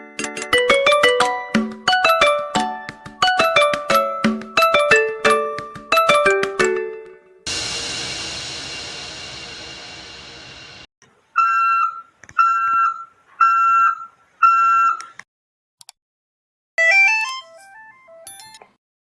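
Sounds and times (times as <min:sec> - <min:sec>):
synthesised ringtone melody: 0:00.2 - 0:07.0, 0:16.8 - 0:18.6.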